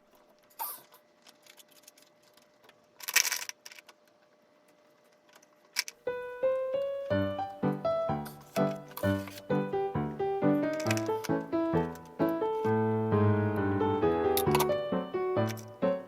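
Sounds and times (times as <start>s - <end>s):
piano-like keyboard melody: 6.0s - 16.0s
small clicks: 10.6s - 12.7s, 15.4s - 15.8s.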